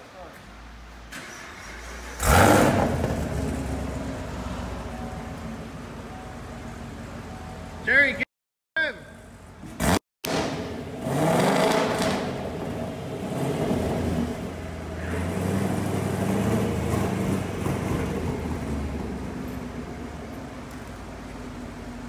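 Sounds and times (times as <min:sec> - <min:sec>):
car engine revving through exhaust: 0:02.2 - 0:04.6, 0:09.8 - 0:19.6.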